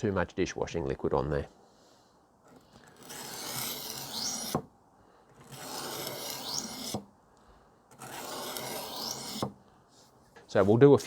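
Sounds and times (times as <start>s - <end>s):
knife grinding on sharpening stone: 3.0s - 4.5s, 5.5s - 7.0s, 8.0s - 9.5s
rising squeak of blade: 3.3s - 4.6s, 5.7s - 7.0s, 8.5s - 9.4s.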